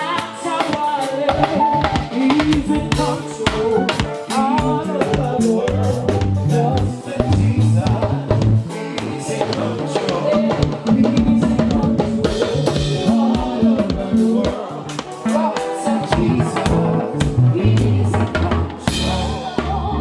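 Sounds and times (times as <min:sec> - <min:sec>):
live band playing: 0:00.0 - 0:20.0
bass drum and snare hits: 0:01.4 - 0:08.7.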